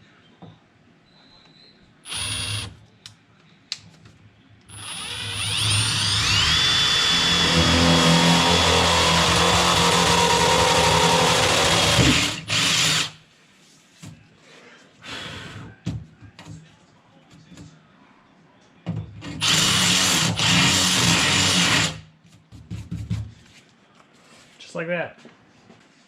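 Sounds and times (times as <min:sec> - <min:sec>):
power drill whining: 0:02.1 - 0:02.7, 0:04.7 - 0:13.2, 0:19.4 - 0:22.0.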